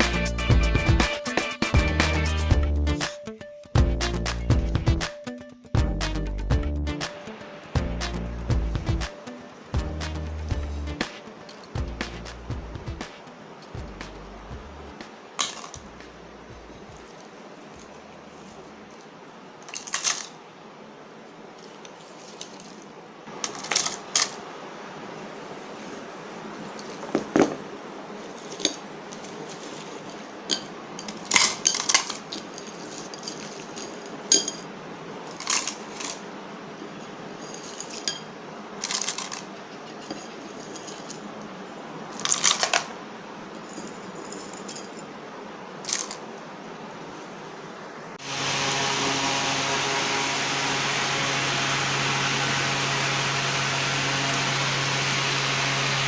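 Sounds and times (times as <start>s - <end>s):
steady background hiss: 0.0s - 56.0s
small hard objects clattering: 15.4s - 15.8s, 35.3s - 36.2s, 38.8s - 39.5s.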